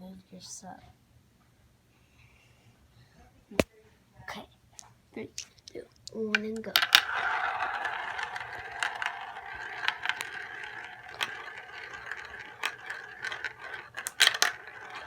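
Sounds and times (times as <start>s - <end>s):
marbles clicking against track: 5.4s - 15.0s
marbles rolling on a track: 5.6s - 15.0s.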